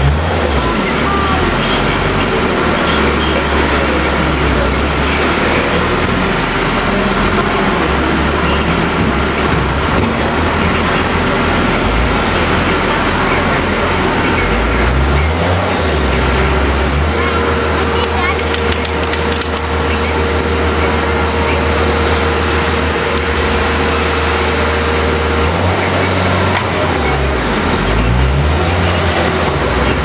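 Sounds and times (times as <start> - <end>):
skid steer loader engine running: 0.0 - 30.0.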